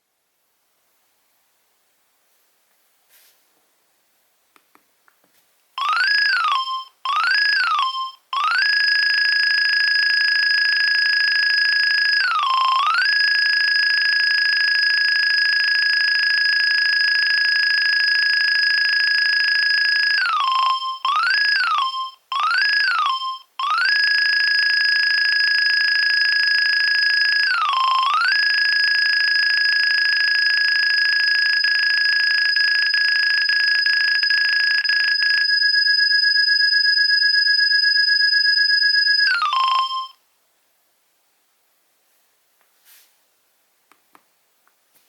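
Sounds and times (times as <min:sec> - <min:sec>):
mobile phone ringtone: 0:05.8 - 0:40.2.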